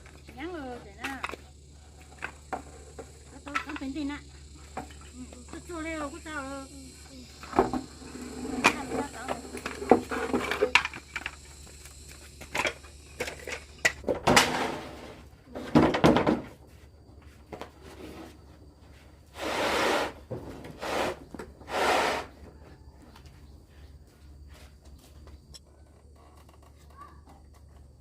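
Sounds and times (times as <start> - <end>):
short scraping sounds: 19.4 - 20.2, 20.8 - 22.3.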